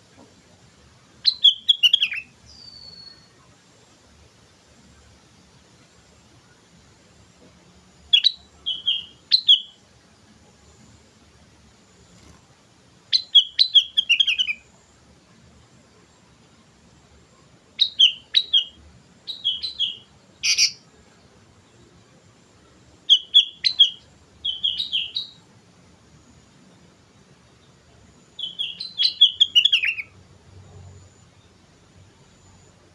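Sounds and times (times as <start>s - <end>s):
bird singing whistled phrases: 1.2s - 3.3s, 8.1s - 9.8s, 13.1s - 14.6s, 17.8s - 20.8s, 23.1s - 25.4s, 28.4s - 30.2s.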